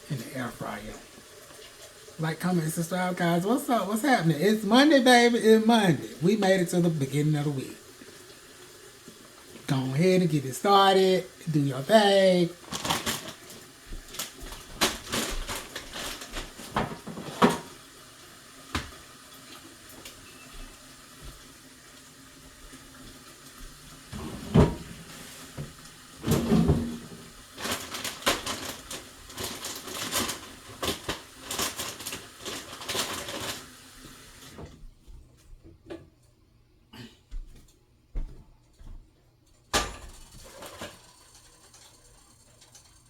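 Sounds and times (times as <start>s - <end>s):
faint steady hiss: 0.0s - 34.9s
kitchen items clattering: 9.6s - 17.8s, 24.0s - 33.8s, 39.8s - 43.0s.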